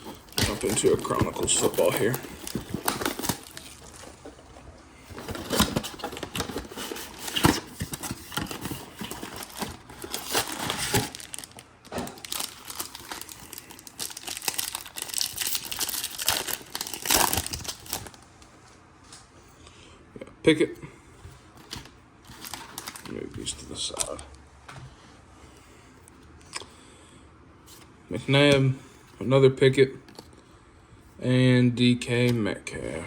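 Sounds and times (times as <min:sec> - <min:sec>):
plastic wrapper tearing and crinkling: 0:00.1 - 0:04.2, 0:05.3 - 0:18.2, 0:21.6 - 0:23.2.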